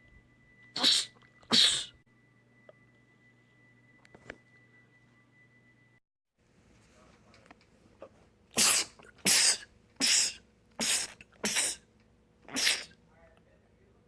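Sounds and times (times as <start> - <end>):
man sneezing: 0.8 - 1.9, 8.6 - 11.8, 12.5 - 13.0.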